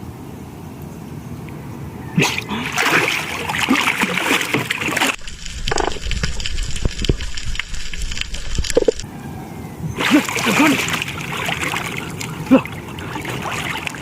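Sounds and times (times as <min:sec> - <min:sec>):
water splashing and sloshing: 0:02.2 - 0:09.1, 0:09.8 - 0:14.0
underwater clicks: 0:04.3 - 0:09.1.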